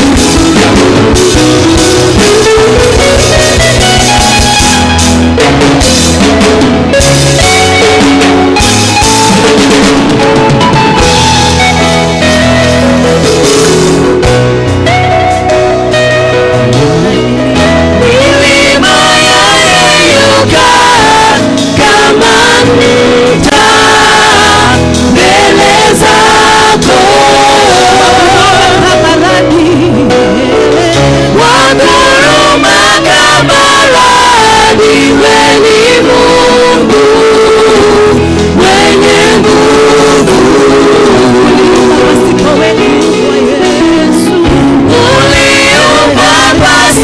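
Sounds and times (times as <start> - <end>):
band with guitar and bass: 0.0 - 47.0
person singing: 16.7 - 47.0.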